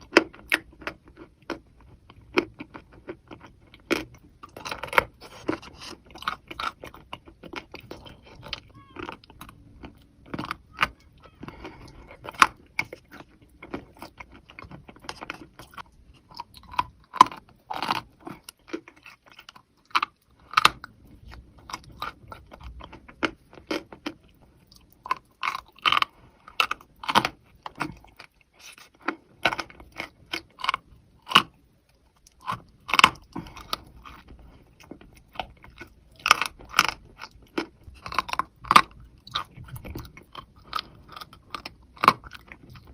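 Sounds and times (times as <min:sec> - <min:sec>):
chalk being chewed crunching: 0:00.0 - 0:10.9.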